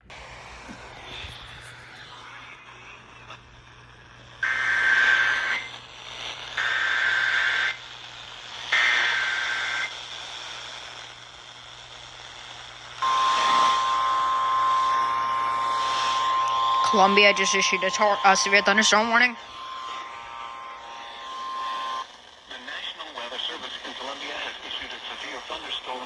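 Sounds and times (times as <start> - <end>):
steady high attention tone: 13.0 - 22.1
raspy buzzing data bursts: 13.0 - 22.4.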